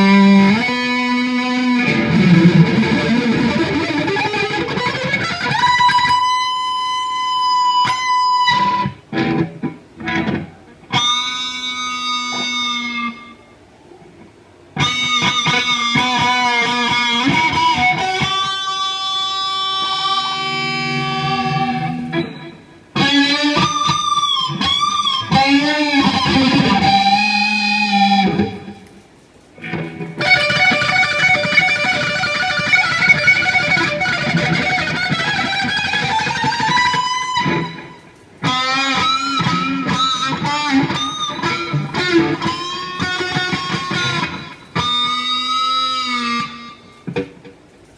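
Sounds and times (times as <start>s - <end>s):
electric guitar lead: 0.0s - 47.9s.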